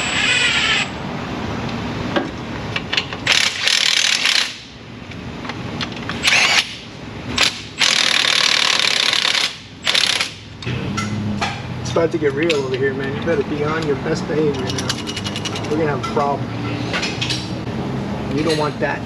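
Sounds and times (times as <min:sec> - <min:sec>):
tool clicks and knocks: 0:14.5 - 0:16.2.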